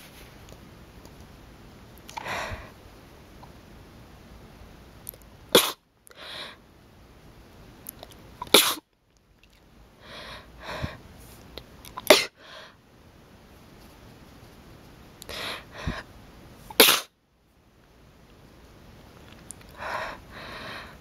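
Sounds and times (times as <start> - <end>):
breathy sounds: 2.1 - 2.8, 15.2 - 16.1, 19.7 - 21.0
person sneezing: 5.5 - 5.8, 8.4 - 8.8, 12.0 - 12.4, 16.7 - 17.1.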